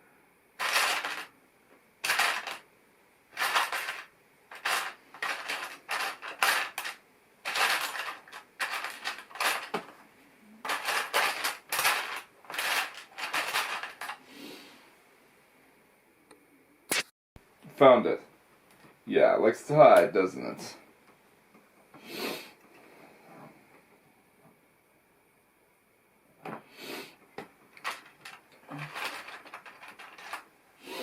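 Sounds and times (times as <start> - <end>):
plastic pieces clattering: 0.6 - 1.3, 2.0 - 2.6, 3.3 - 10.0, 10.6 - 14.2, 27.8 - 30.5.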